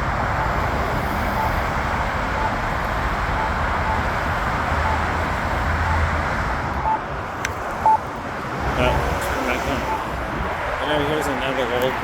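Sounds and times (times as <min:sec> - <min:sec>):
road traffic: 0:00.0 - 0:12.0
wind noise: 0:00.0 - 0:12.0
short locator beeps: 0:00.3 - 0:02.6, 0:03.3 - 0:04.1, 0:08.8 - 0:10.1.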